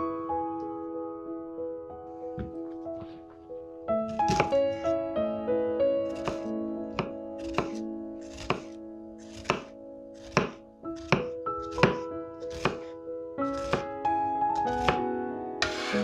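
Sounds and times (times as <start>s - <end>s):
background music: 0.0s - 16.0s
knife chopping onion: 4.1s - 4.5s, 6.1s - 12.9s, 13.5s - 13.9s, 14.6s - 15.0s.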